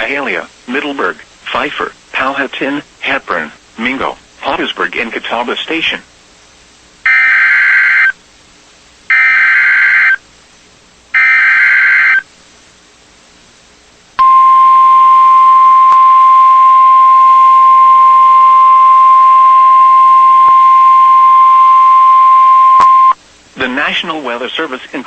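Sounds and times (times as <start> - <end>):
steady attention tone: 7.1 - 8.1, 9.1 - 10.2, 11.2 - 12.2, 14.2 - 23.2.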